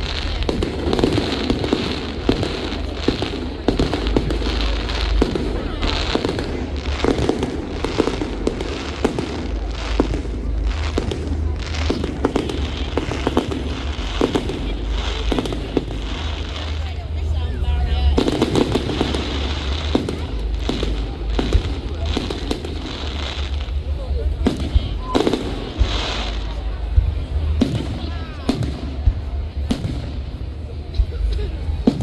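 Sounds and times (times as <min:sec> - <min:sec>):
fireworks bangs and crackles: 0:00.0 - 0:32.0
low rumble: 0:00.0 - 0:32.0.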